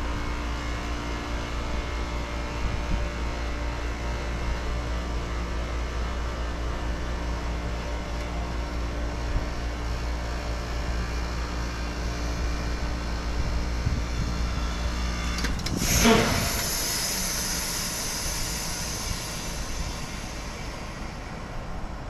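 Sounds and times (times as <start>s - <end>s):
heat pump compressor hum: 0.0s - 22.0s
loud rushing hiss: 14.0s - 22.0s.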